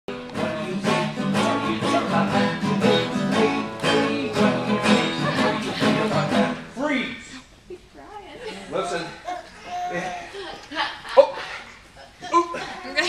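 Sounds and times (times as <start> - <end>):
guitar strummed: 0.1 - 6.7.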